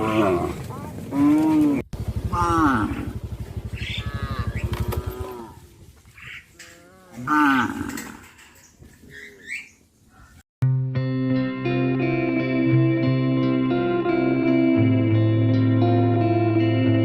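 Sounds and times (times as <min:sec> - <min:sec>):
cattle mooing: 0:00.0 - 0:05.8, 0:06.5 - 0:08.4.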